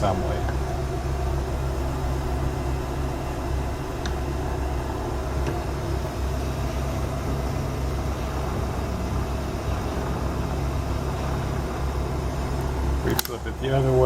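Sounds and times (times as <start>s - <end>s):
lathe machine hum: 0.0s - 14.0s.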